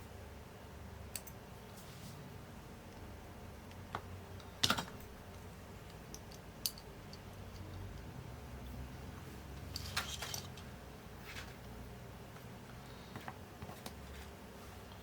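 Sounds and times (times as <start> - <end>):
low steady hum: 0.0 - 15.0
small tools clicking and tapping: 1.1 - 1.4, 3.7 - 8.1, 9.6 - 10.7.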